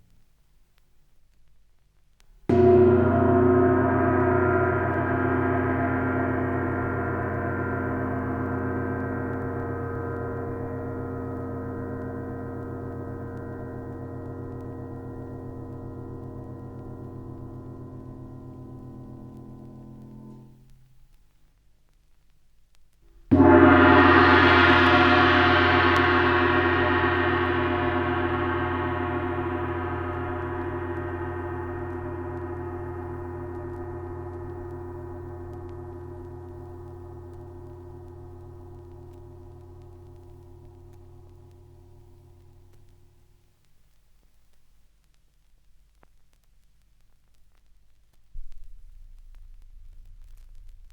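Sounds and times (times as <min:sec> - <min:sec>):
gong ringing: 0:02.5 - 0:20.5, 0:23.3 - 0:39.2.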